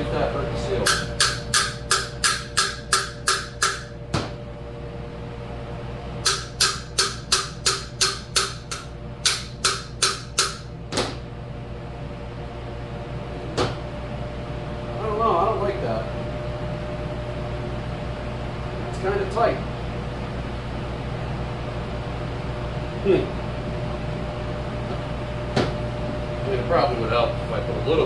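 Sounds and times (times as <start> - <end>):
workshop hum: 0.0 - 28.0
hammer tapping on metal: 0.8 - 4.0, 6.2 - 11.1.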